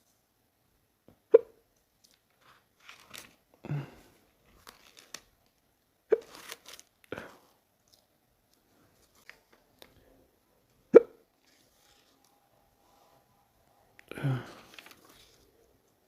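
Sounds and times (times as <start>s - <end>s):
loud sharp hiccups: 10.9s - 11.2s.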